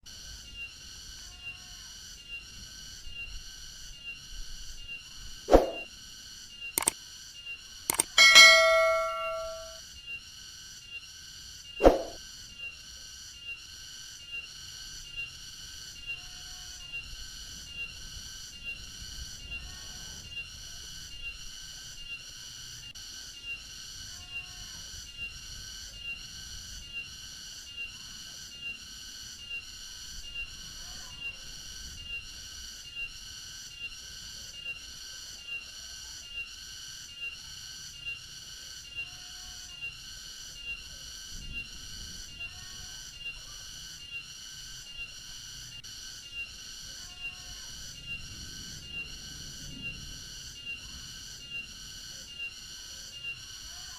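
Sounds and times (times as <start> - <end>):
cicada singing: 13.2 - 53.9.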